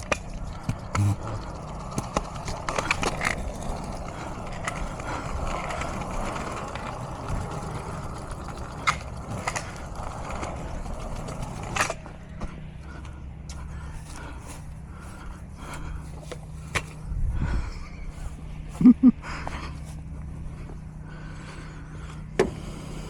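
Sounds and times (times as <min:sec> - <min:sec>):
steady rumbling noise: 0:00.0 - 0:23.0
footsteps walking outdoors: 0:12.0 - 0:22.3.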